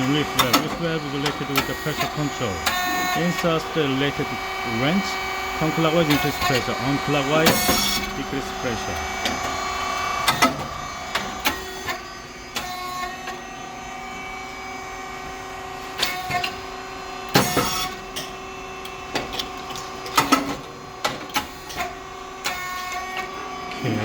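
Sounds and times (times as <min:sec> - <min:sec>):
loud burst of noise: 0:00.0 - 0:11.5
machine motor hum: 0:00.0 - 0:24.0.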